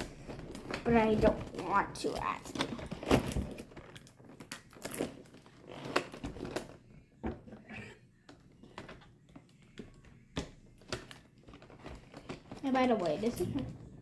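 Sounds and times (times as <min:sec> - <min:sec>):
plastic rustling: 0:00.0 - 0:14.0
toy packaging being opened: 0:00.3 - 0:06.8.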